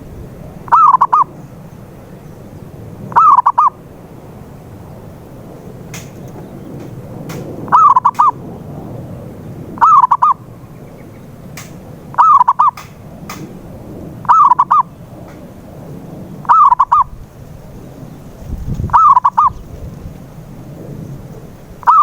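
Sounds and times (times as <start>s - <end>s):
low background rumble: 0.0s - 22.0s
dove cooing: 0.6s - 1.5s, 3.1s - 3.8s, 6.0s - 8.4s, 9.8s - 10.5s, 11.6s - 13.5s, 14.2s - 15.0s, 16.4s - 17.2s, 18.9s - 19.7s, 21.4s - 22.0s.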